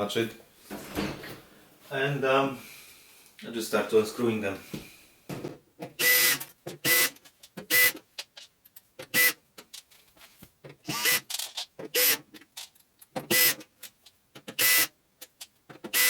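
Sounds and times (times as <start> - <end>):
electric screwdriver whirring: 6.0 - 7.1, 10.9 - 11.4, 14.6 - 14.9.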